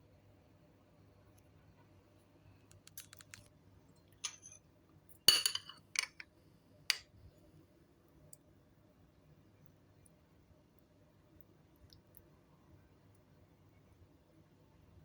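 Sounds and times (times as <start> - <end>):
kitchenware clinking: 4.2 - 4.6, 5.3 - 6.3.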